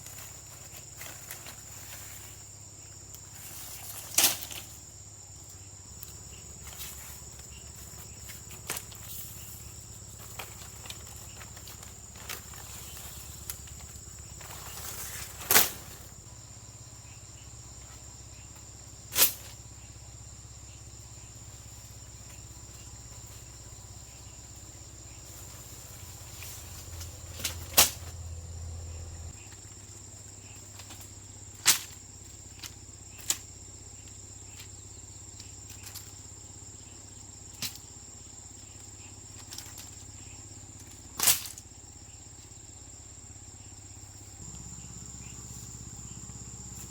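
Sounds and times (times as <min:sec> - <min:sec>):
high-pitched insect drone: 0:42.0 - 0:46.9.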